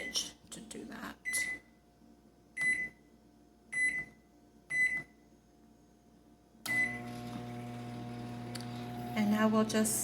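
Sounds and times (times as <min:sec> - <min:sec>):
microwave oven humming: 0:01.2 - 0:10.0
microwave keypad beeps: 0:02.6 - 0:03.0, 0:03.7 - 0:05.2, 0:06.7 - 0:07.1.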